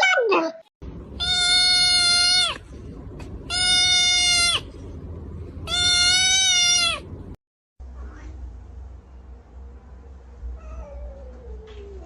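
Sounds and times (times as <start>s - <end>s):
cat meowing: 1.2s - 2.6s, 3.5s - 4.6s, 5.7s - 7.1s.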